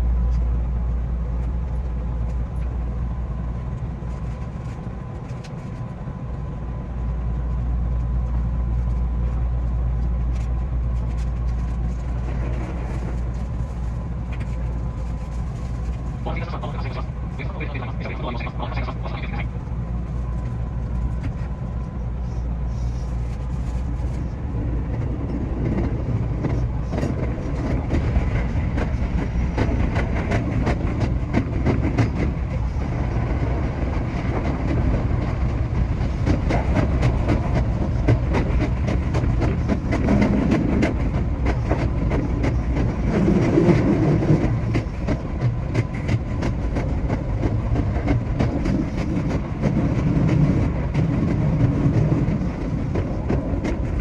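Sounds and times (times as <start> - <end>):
electric train rumble: 0.0 - 54.0
wheels clicking over rail joints: 22.8 - 54.0.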